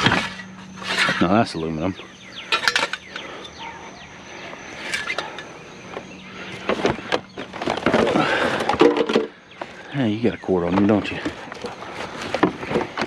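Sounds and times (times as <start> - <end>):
junk knocking and clattering: 6.6 - 9.4.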